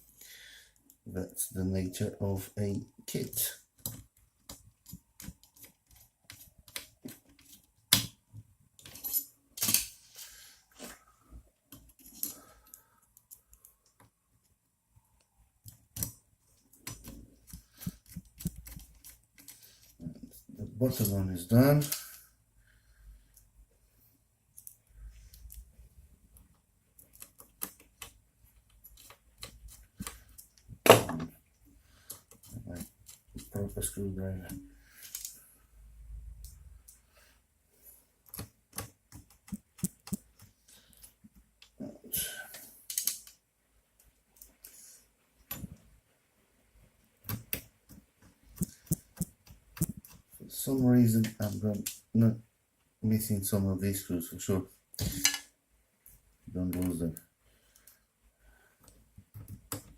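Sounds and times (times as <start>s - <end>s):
parts clattering: 3.2s - 11.0s, 55.0s - 55.6s
small parts clicking and tapping: 3.2s - 11.0s, 11.7s - 22.3s, 24.5s - 35.4s, 36.3s - 37.1s, 38.1s - 41.8s, 42.5s - 45.9s, 47.0s - 52.1s, 58.7s - 59.9s
metal screws clicking and rattling: 8.8s - 10.0s.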